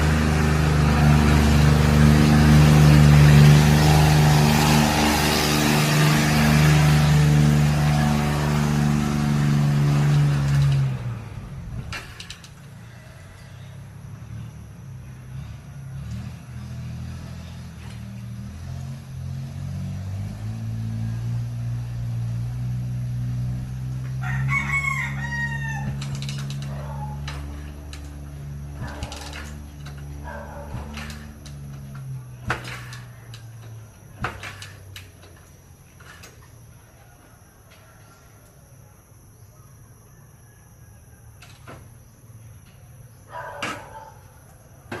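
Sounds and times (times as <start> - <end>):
rooster crowing: 12.6 - 14.2, 23.9 - 29.0, 36.8 - 38.8, 39.7 - 41.6
kick-starter mechanical clacks: 25.8 - 36.5.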